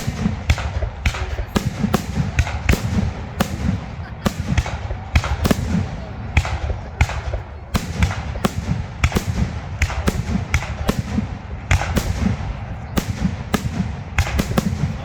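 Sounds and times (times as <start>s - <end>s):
fireworks bursting with sharp bangs: 0.0s - 15.0s
low rumble of echoing booms: 0.0s - 15.0s.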